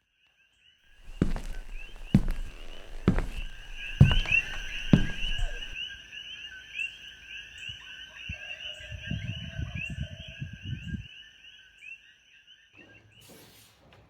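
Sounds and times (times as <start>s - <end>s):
dull thumps: 1.0s - 5.8s.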